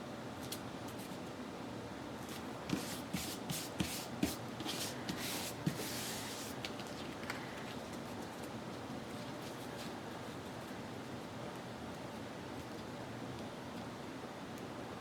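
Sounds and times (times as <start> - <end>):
scratchy strokes on paper: 2.7 - 6.6.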